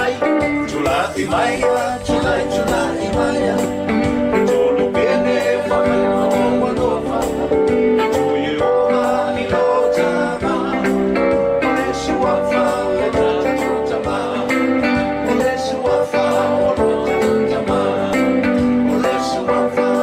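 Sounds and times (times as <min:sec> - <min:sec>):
person singing: 0:00.0 - 0:20.0.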